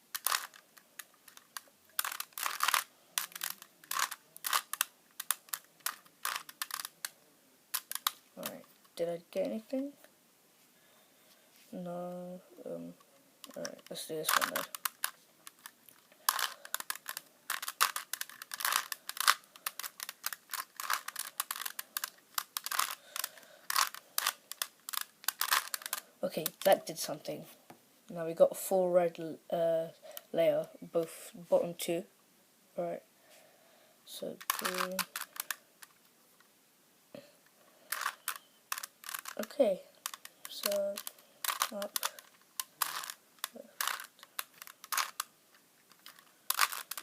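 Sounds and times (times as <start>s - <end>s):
puzzle cube plastic clicks: 0.1s - 9.6s, 12.9s - 27.0s, 34.2s - 36.1s, 37.9s - 47.0s
puzzle cube scraping turns: 0.1s - 9.7s, 12.7s - 27.1s, 34.2s - 36.0s, 37.9s - 47.0s.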